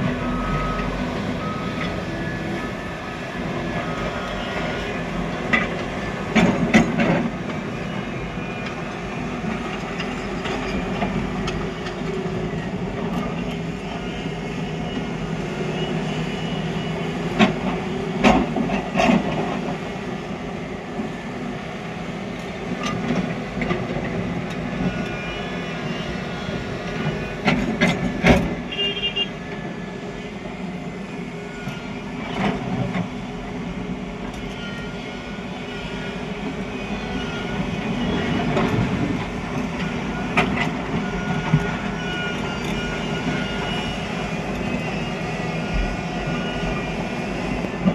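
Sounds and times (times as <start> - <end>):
excavator diesel engine: 0.0 - 47.9.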